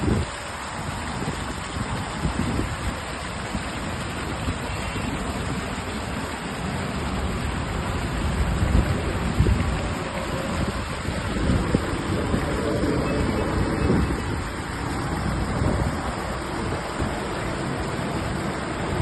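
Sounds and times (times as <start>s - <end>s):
water rushing: 0.0s - 19.0s
low rumbling gusts: 6.9s - 19.0s.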